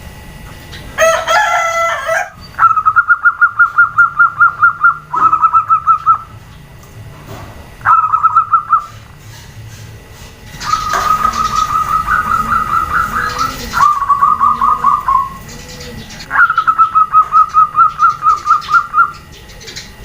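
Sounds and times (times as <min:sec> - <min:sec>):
doves calling in fast high notes: 0:00.7 - 0:06.6, 0:07.8 - 0:09.1, 0:10.5 - 0:20.0
lower bird call with falling tone: 0:02.1 - 0:06.4, 0:07.8 - 0:09.0, 0:10.6 - 0:20.0.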